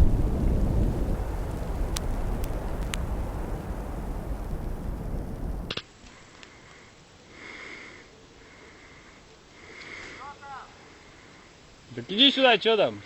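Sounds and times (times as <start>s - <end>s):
fire roaring: 0.0s - 5.8s
faint hiss: 0.0s - 13.0s
breathy sniffs: 6.1s - 10.3s.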